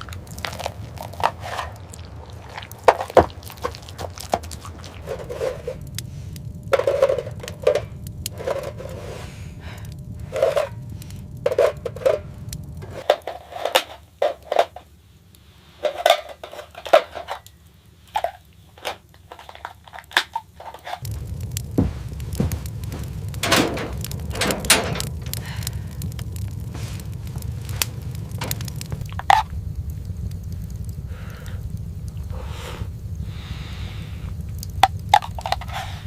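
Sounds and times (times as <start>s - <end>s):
objects being handled: 0.0s - 9.6s, 10.2s - 15.0s, 15.8s - 29.4s
low steady rumble: 0.0s - 20.0s, 20.6s - 36.0s.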